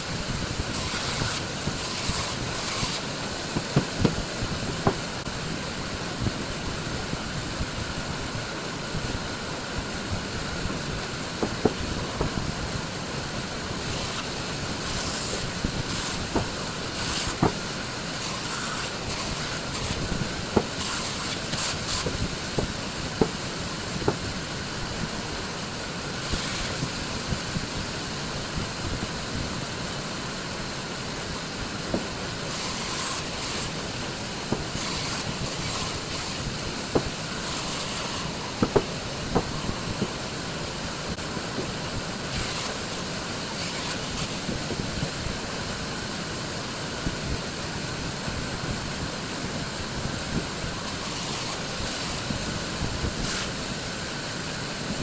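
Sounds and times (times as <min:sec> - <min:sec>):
hand tools hissing on wood: 0:00.0 - 0:06.5, 0:10.2 - 0:55.0.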